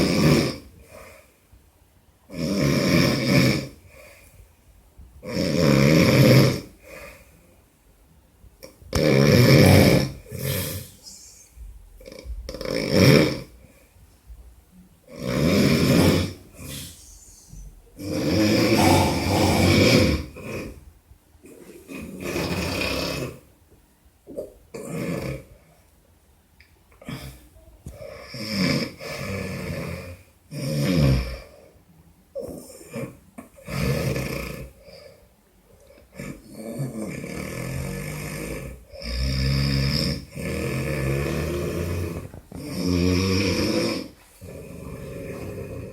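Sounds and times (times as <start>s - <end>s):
man snoring loudly: 9.0s - 10.9s, 15.2s - 16.9s, 18.0s - 20.6s.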